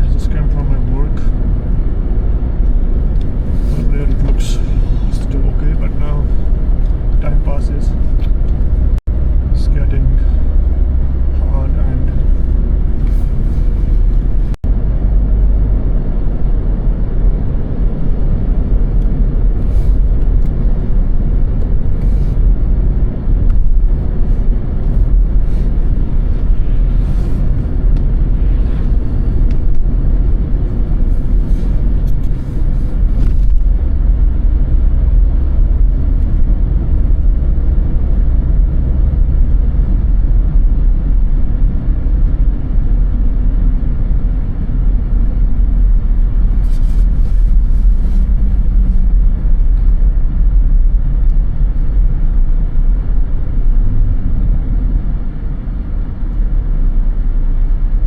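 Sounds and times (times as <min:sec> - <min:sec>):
tyres and engine rumble: 0:00.0 - 0:58.0.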